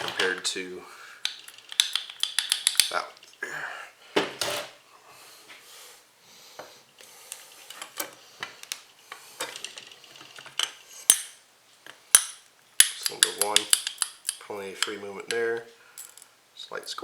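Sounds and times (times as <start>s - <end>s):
metal parts clinking and scraping: 0.0s - 3.4s, 4.4s - 4.8s, 7.3s - 16.4s.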